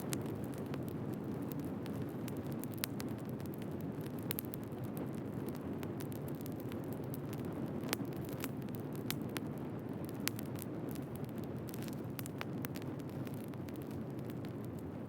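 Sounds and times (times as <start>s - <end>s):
firewood crackling and popping: 0.0s - 15.0s
low rumble of flames: 0.0s - 15.0s.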